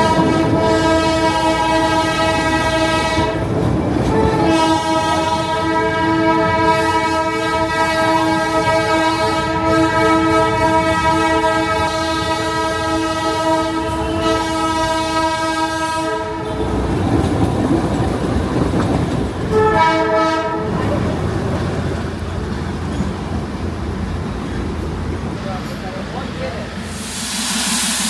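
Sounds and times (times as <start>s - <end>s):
train horn blasts: 0.0s - 16.6s, 19.5s - 20.9s
train running on track: 0.0s - 28.0s.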